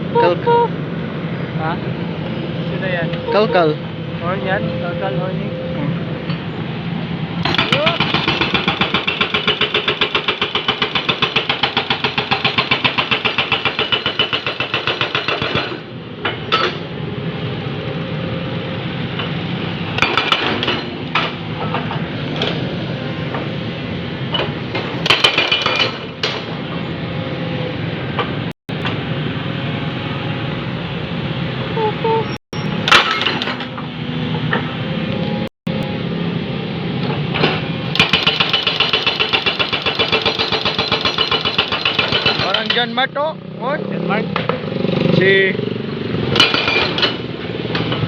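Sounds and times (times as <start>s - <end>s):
hydraulic breaker hammering: 7.4s - 16.8s, 24.8s - 26.6s, 37.9s - 42.9s.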